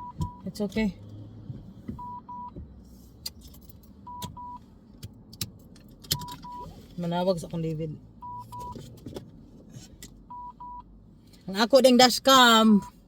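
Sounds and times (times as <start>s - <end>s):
dashcam double beep: 0.0s - 0.6s, 2.0s - 2.6s, 4.1s - 4.6s, 6.2s - 6.7s, 8.2s - 8.8s, 10.3s - 10.8s, 12.7s - 13.0s.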